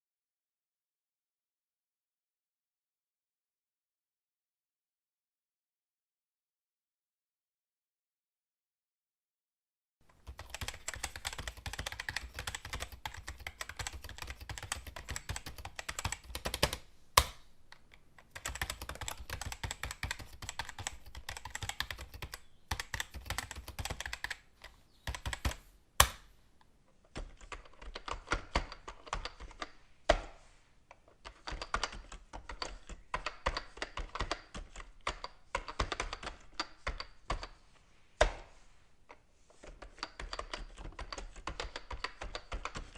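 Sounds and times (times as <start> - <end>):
fast typing on keyboard: 10.2 - 16.8, 18.3 - 24.4, 25.0 - 25.6, 27.2 - 29.7, 31.3 - 37.6, 39.7 - 42.9.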